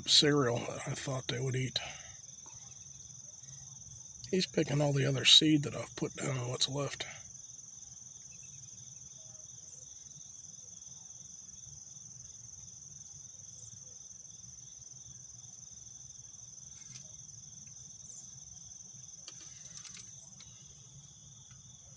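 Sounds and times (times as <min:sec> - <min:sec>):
insect chorus trilling: 0:00.0 - 0:21.9
faint clicks: 0:19.2 - 0:20.7.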